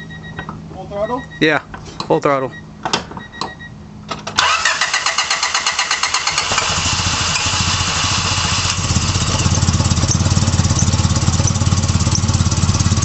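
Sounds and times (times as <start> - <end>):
car engine cranking and starting: 3.2 - 13.0
engine running roughly: 4.4 - 13.0.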